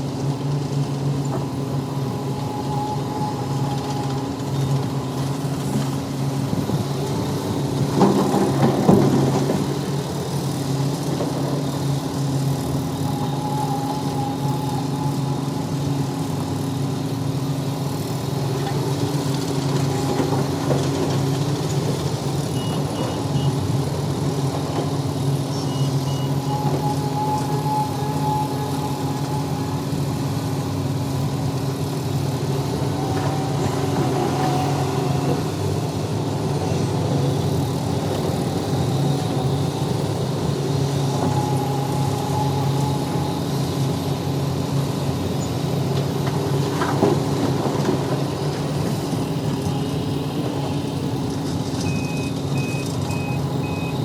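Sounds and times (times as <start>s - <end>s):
diesel engine running: 0.0s - 54.0s
faint high whine: 25.4s - 35.3s.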